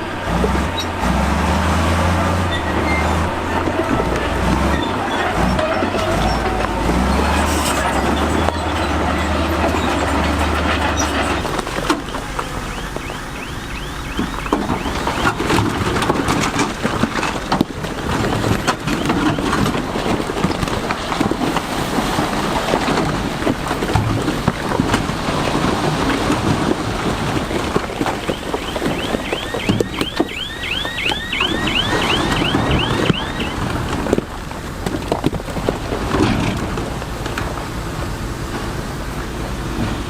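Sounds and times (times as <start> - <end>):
low engine hum: 0.0 - 40.0
rock clattering and knocking: 33.6 - 37.8.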